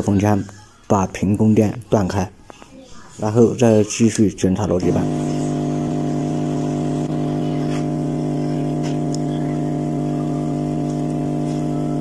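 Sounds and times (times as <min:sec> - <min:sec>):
hot air gun humming: 0:04.8 - 0:12.0.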